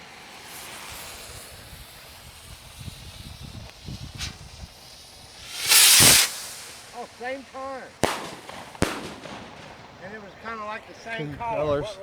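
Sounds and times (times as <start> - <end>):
fuses hissing: 0.0 - 9.2
sharp firework pop: 5.4 - 7.2, 8.0 - 9.6
loud firework bang: 5.4 - 10.2.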